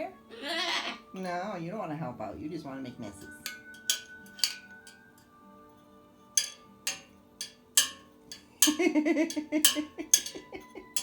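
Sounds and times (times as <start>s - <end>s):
hard objects clinking together: 3.2s - 5.4s, 6.2s - 11.0s.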